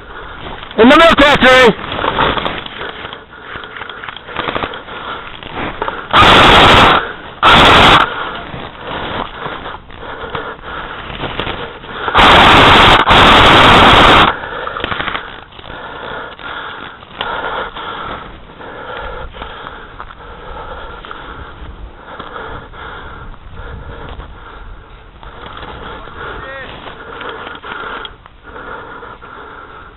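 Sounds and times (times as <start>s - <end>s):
distorted blasts on microphone: 0.0s - 3.0s, 4.3s - 15.4s
heavy breathing: 0.0s - 29.9s.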